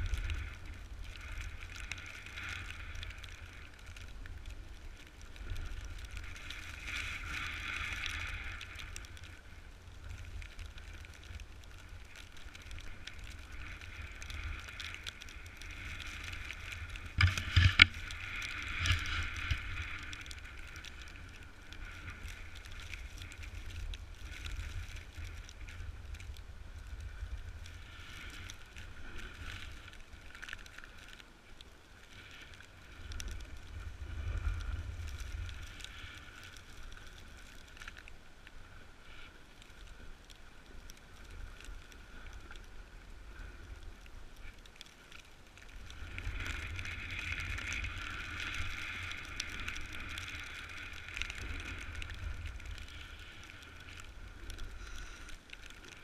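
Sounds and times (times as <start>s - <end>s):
wind on microphone: 12.6s - 29.9s.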